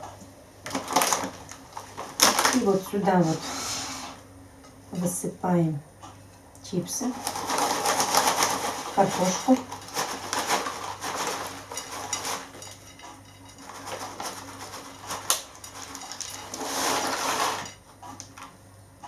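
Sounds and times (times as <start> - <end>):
potato chips crackling and rattling: 0.6 - 2.9, 7.0 - 18.5.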